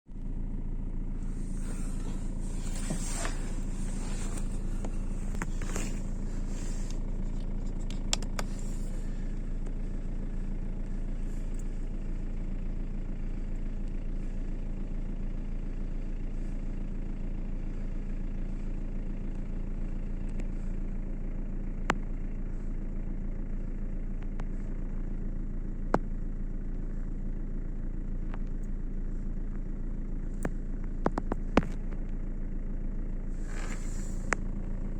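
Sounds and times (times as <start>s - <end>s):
air heater humming: 1.0s - 11.9s
rough hiss: 1.2s - 7.0s, 33.4s - 34.4s.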